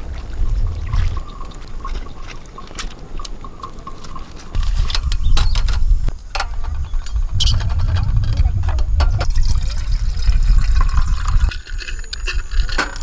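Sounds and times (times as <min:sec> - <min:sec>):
water splashing and trickling: 0:00.0 - 0:13.0
low rumble: 0:04.6 - 0:11.5.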